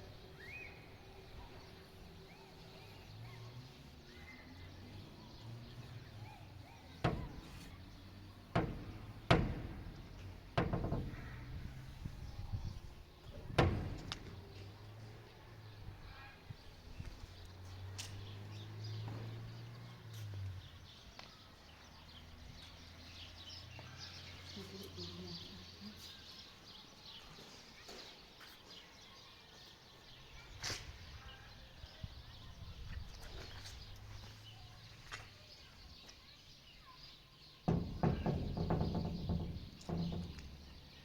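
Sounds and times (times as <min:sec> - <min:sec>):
small birds chirping: 0:00.0 - 0:41.0
light knocks: 0:06.7 - 0:11.8, 0:13.3 - 0:14.8, 0:37.7 - 0:41.0.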